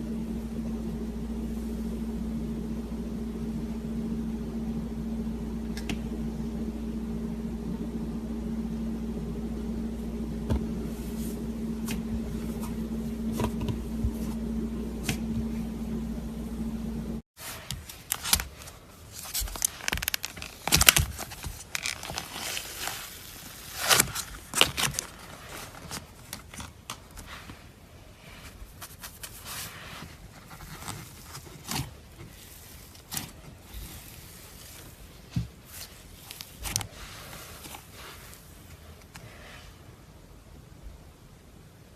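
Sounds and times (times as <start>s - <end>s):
steady low hum: 0.0s - 26.6s
slime crackles and squishes: 17.4s - 27.7s, 28.6s - 38.7s.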